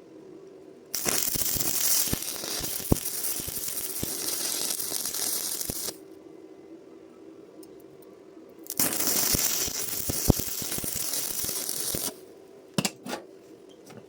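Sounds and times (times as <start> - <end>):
welding arc crackling and sizzling: 0.9 - 6.2, 8.6 - 12.3.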